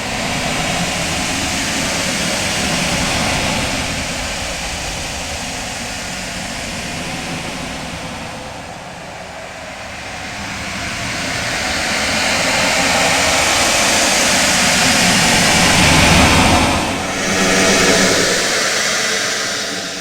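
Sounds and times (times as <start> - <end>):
dense noise wash ambience: 7.8 - 20.0.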